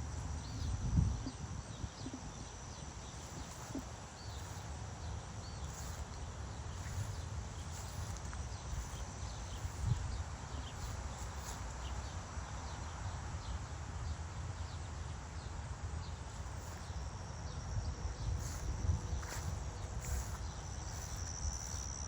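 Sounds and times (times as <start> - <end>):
high insect trill: 0.0 - 22.0.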